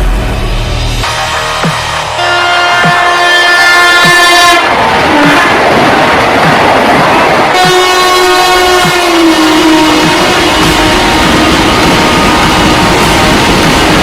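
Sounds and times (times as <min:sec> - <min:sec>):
train passing rushing noise: 0:00.0 - 0:14.0
train horn: 0:01.0 - 0:05.6, 0:07.5 - 0:14.0.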